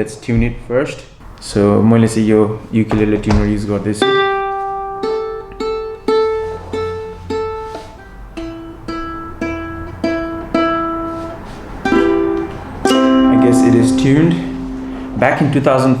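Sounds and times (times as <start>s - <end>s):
ukulele strings plucked: 4.0s - 15.6s.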